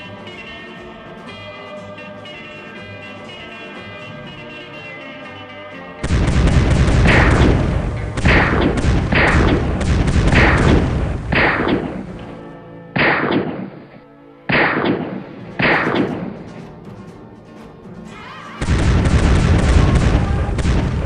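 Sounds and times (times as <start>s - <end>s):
gunshots: 6.0s - 12.4s, 13.0s - 16.6s, 18.6s - 21.0s.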